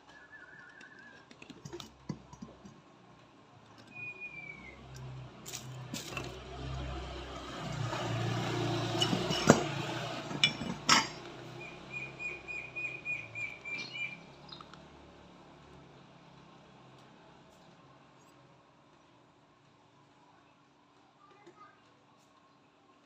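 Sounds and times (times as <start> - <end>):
bird chirping: 3.8 - 4.8, 11.5 - 14.8
metal tools clinking: 8.9 - 11.3.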